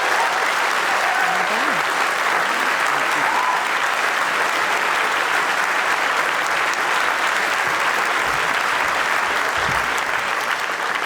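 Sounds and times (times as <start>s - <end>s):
congregation applauding: 0.0s - 11.0s.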